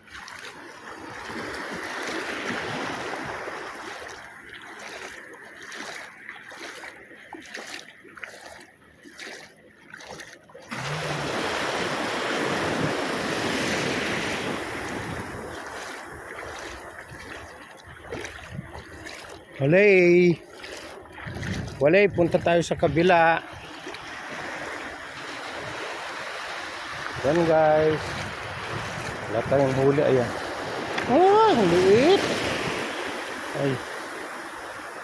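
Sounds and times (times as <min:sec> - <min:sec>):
sea waves breaking: 0:00.0 - 0:35.0
wind on microphone: 0:12.5 - 0:19.0, 0:21.1 - 0:23.7, 0:26.9 - 0:32.8.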